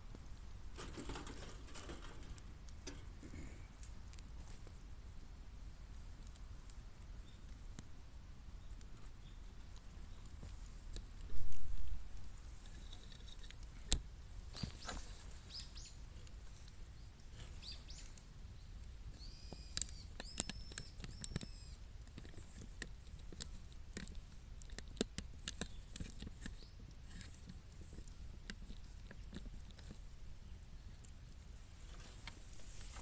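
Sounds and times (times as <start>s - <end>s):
fire crackling and popping: 0.1s - 31.2s
bird chirping: 8.6s - 10.3s, 14.6s - 16.0s, 16.9s - 21.8s.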